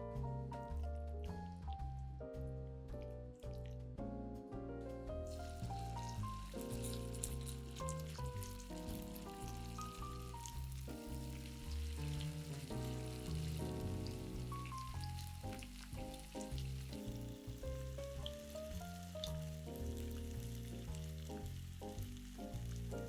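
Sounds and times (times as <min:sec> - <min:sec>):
background music: 0:00.0 - 0:23.0
food sizzling in oil: 0:05.3 - 0:23.0.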